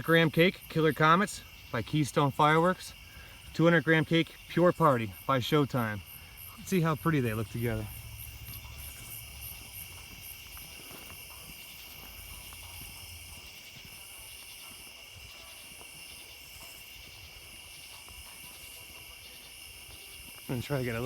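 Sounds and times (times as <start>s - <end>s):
night insects chirping: 0.0s - 21.0s.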